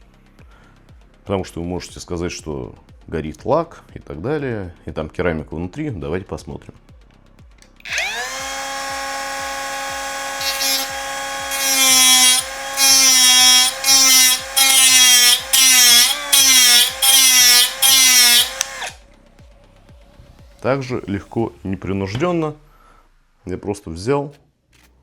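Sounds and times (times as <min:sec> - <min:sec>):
angle grinder whine: 0:07.9 - 0:19.0
grinder cutting plastic keycap: 0:10.1 - 0:19.0.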